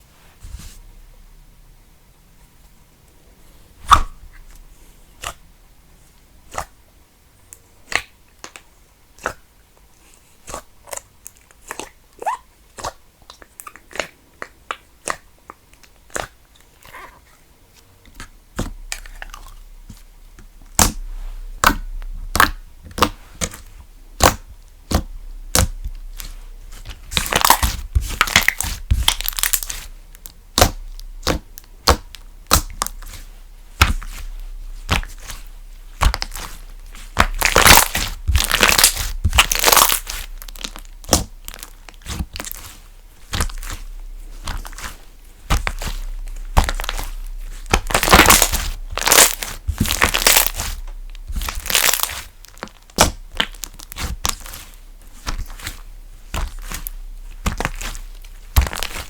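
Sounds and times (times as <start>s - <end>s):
slime squishing and popping: 3.8s - 4.2s, 18.0s - 59.0s.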